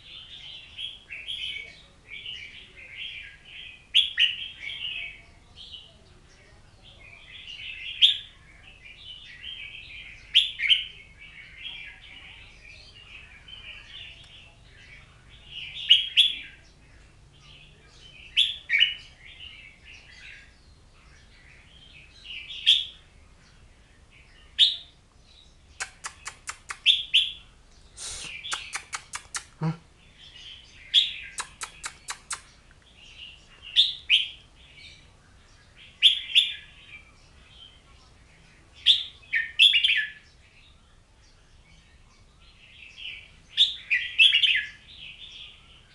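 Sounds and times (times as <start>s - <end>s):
caged songbird singing: 0.0s - 45.9s
fast sharp ticks: 25.8s - 26.9s, 28.2s - 29.6s, 31.4s - 32.5s.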